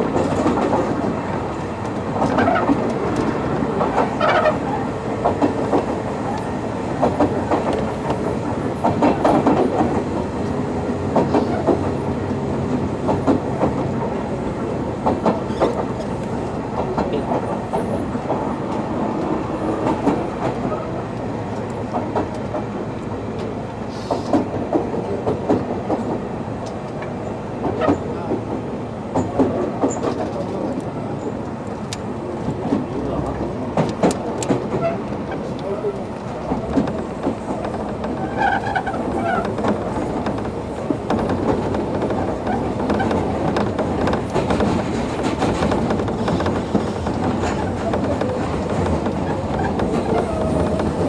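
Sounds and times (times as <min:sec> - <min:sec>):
train running rumble: 0:00.0 - 0:51.0
wheel clicks over rail joints: 0:31.9 - 0:51.0.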